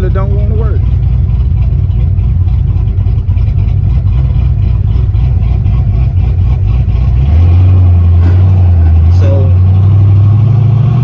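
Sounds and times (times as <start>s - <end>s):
car engine and exhaust rumbling: 0.0s - 11.0s.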